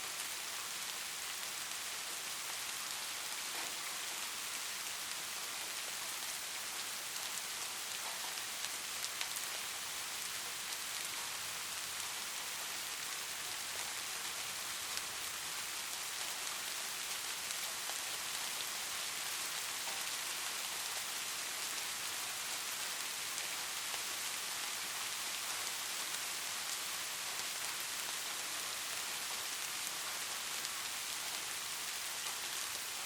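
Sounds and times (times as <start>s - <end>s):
steady rain hiss: 0.0s - 33.0s
rain drops ticking: 0.1s - 33.0s.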